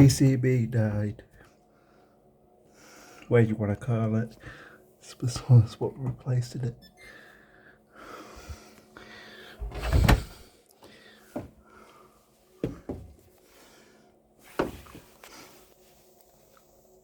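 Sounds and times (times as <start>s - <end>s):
tumble dryer door thump: 9.6s - 10.4s.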